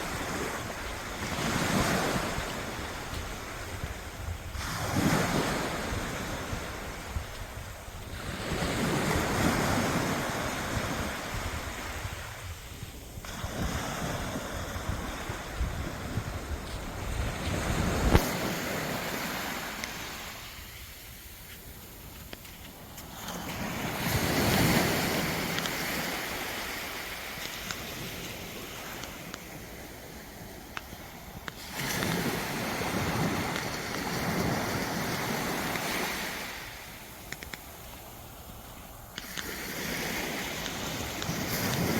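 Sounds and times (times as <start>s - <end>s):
sea waves washing onto beach: 0.0s - 41.9s.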